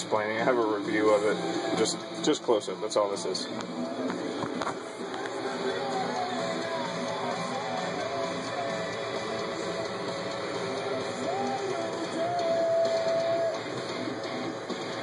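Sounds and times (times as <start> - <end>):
guitar-led background music: 0.0 - 15.0.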